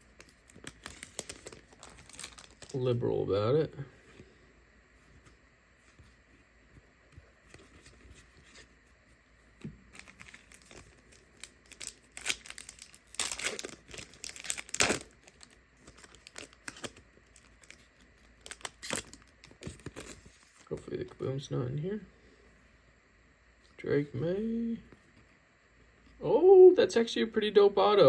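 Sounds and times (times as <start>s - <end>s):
plastic wrapper tearing and crinkling: 0.0s - 2.9s, 9.9s - 20.7s.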